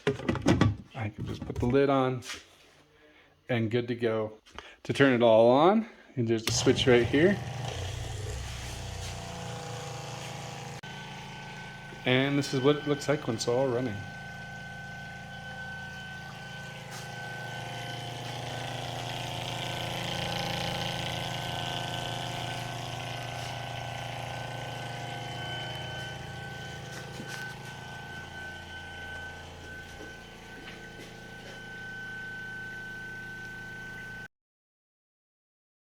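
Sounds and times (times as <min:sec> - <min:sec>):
electric pump humming and whining: 0:06.5 - 0:34.3.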